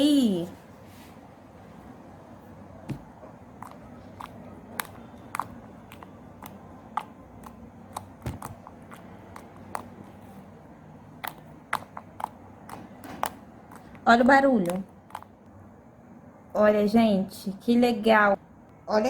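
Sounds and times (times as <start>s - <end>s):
slime clicking and popping: 2.9s - 10.3s, 11.2s - 15.4s.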